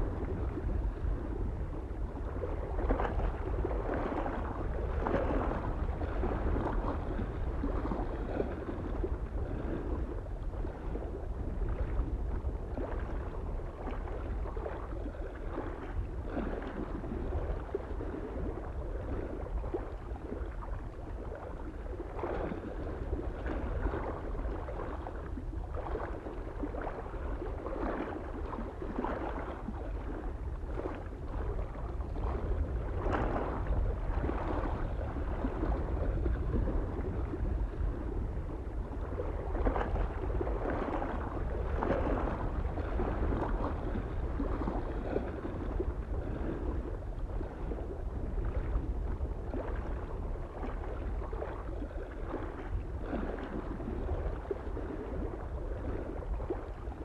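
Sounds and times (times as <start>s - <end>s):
small waves lapping on shore: 0.0s - 57.0s
wind rumble on microphone: 0.0s - 57.0s.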